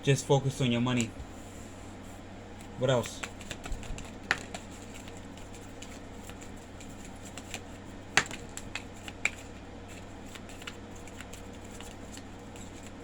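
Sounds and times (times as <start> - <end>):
cards tapping on a table: 3.0 - 5.2, 5.8 - 9.5
sharp card snaps: 7.3 - 9.5.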